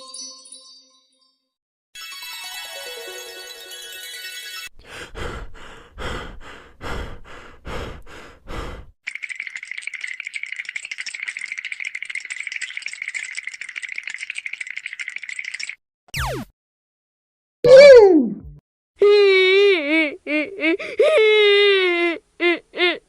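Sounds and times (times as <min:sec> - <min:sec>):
cartoon rattle shaking: 0:09.1 - 0:15.8.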